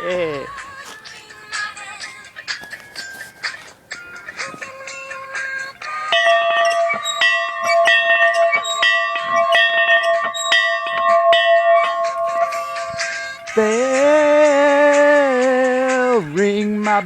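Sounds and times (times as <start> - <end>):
large bell ringing: 6.0 - 16.2.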